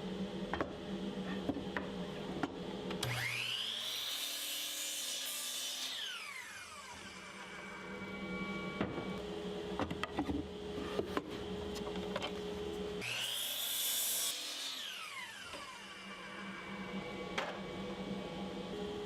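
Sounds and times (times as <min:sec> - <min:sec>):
power saw cutting wood: 0:03.0 - 0:09.2, 0:13.0 - 0:17.5.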